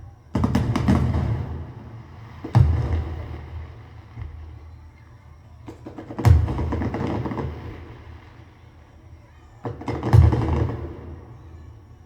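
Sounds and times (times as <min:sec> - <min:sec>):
firework boom with crackling tail: 0:00.0 - 0:08.7, 0:09.6 - 0:11.7.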